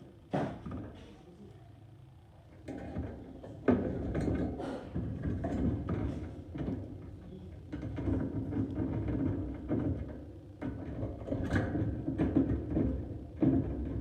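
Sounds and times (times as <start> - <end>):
objects knocking and rattling: 2.6 - 14.0.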